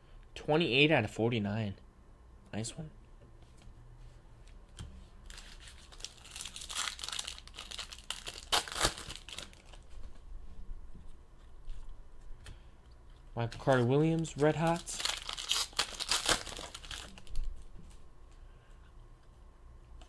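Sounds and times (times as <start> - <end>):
wrapper tearing and crinkling: 5.2 - 10.0, 13.4 - 17.6.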